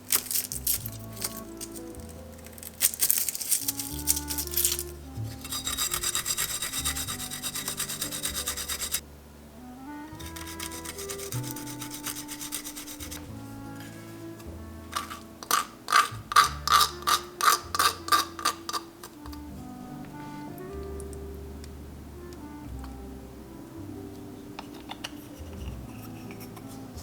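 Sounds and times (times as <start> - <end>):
rapid rasping strokes: 0.0 - 9.0, 10.1 - 18.9
soft background music: 0.0 - 27.0.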